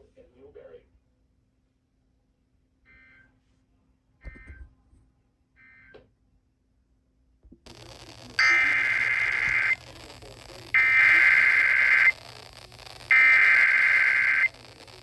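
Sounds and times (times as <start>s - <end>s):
faint hiss and hum: 0.0s - 4.2s, 6.8s - 15.0s
screechy digital data tones: 7.7s - 15.0s.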